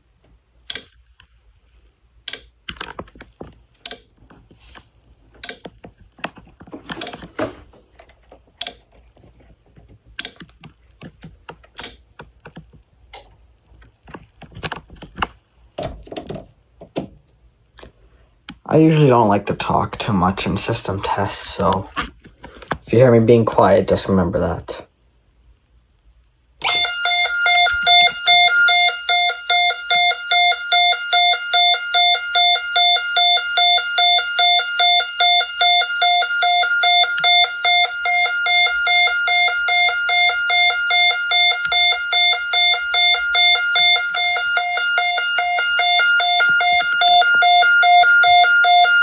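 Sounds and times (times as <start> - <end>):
electronic alarm tone pulsing: 26.6 - 49.0.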